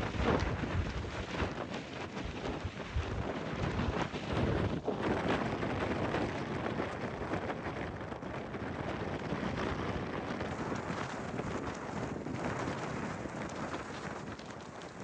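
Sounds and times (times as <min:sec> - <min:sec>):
blizzard wind blowing hard: 0:00.0 - 0:15.0.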